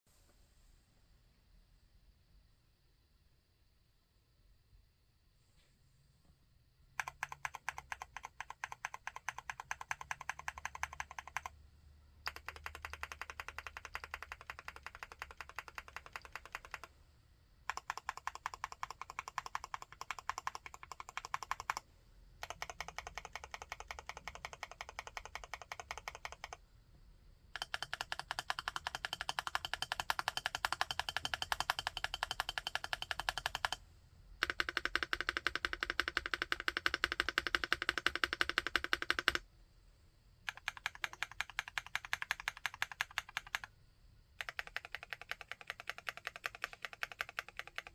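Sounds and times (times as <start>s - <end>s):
mechanical keyboard typing: 7.0s - 11.5s, 12.2s - 17.0s, 17.7s - 21.8s, 22.4s - 26.6s, 27.6s - 33.8s, 34.4s - 39.4s, 40.5s - 43.7s, 44.4s - 47.9s.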